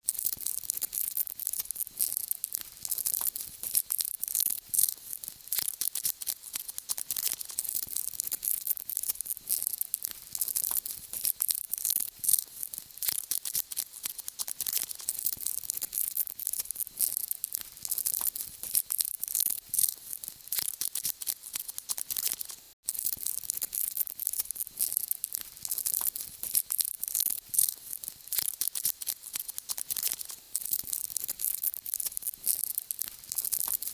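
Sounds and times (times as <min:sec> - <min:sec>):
insects crackling with tiny clicks: 0:00.0 - 0:33.9.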